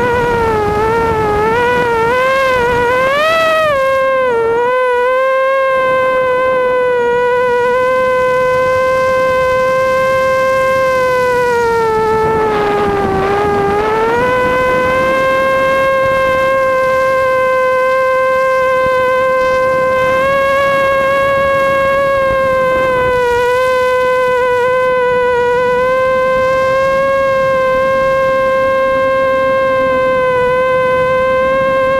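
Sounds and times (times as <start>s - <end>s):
quadcopter motors whining: 0.0s - 31.9s.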